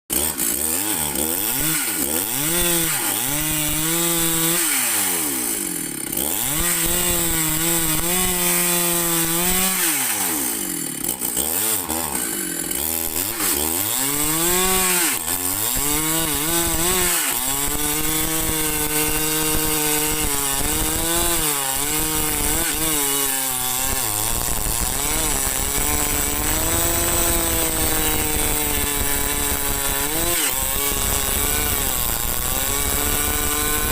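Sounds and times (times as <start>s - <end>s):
chainsaw cutting into wood: 0.1s - 33.9s.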